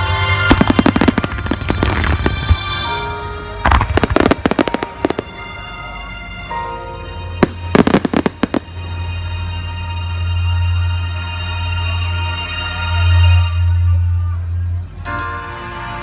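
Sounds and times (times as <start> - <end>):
fireworks bangs and crackles: 0.0 - 6.0, 7.4 - 8.9
music with long held notes: 0.0 - 16.0.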